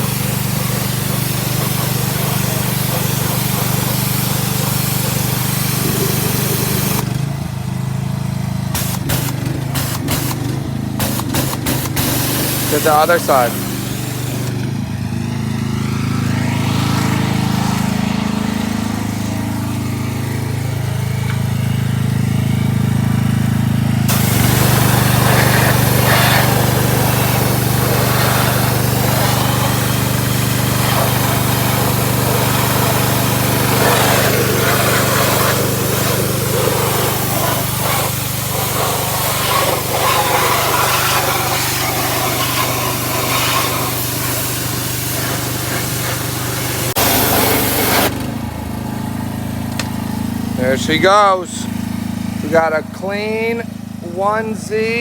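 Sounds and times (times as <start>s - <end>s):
water jet hissing and spattering: 0.0s - 7.6s, 8.6s - 14.9s, 24.1s - 48.4s
small gasoline engine running: 0.0s - 55.0s.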